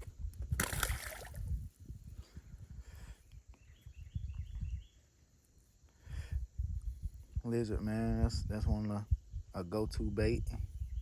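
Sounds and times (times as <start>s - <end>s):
wind buffeting microphone: 0.0s - 5.1s, 6.0s - 11.0s
bird chirps: 3.4s - 5.2s.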